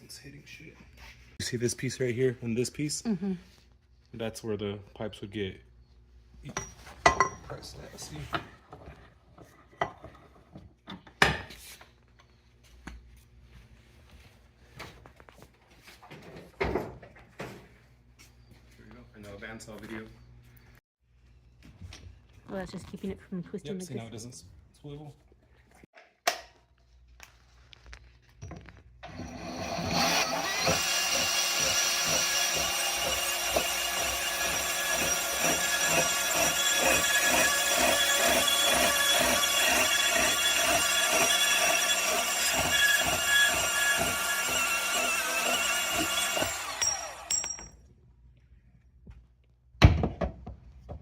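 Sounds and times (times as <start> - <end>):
bandsaw cutting metal pipe: 29.0 - 47.6.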